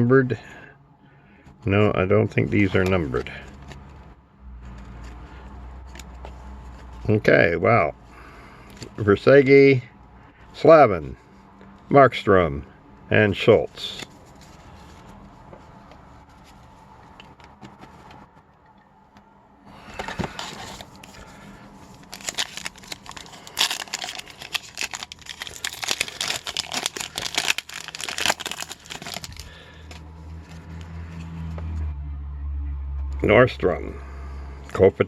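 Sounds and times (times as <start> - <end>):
card pack wrapper tearing: 20.2 - 30.0.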